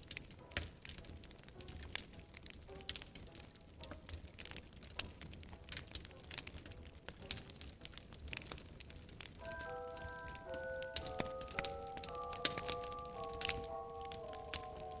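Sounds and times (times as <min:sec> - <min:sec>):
wood fire crackling and popping: 0:00.0 - 0:15.0
music notes: 0:09.4 - 0:15.0.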